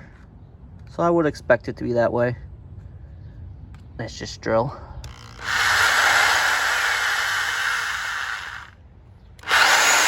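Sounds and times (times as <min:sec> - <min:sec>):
electric jackhammer drilling ground: 0:05.0 - 0:08.8, 0:09.4 - 0:10.0.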